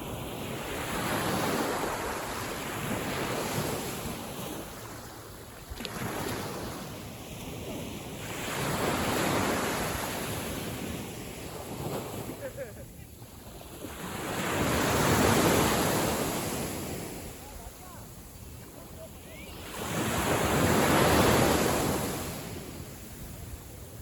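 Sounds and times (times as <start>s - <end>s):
small waves washing in: 0.0s - 24.0s.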